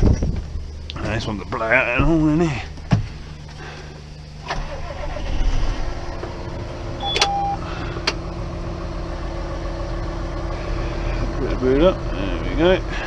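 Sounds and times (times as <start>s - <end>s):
tractor engine running: 0.0s - 13.0s
short beep: 7.0s - 7.6s.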